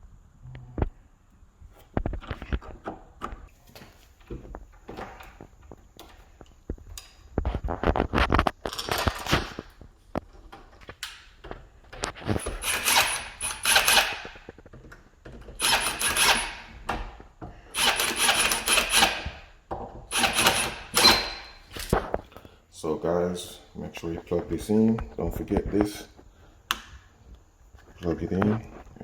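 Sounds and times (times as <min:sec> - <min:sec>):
power drill driving screws: 0:12.4 - 0:14.4, 0:15.6 - 0:16.8, 0:17.7 - 0:19.4, 0:20.1 - 0:21.6.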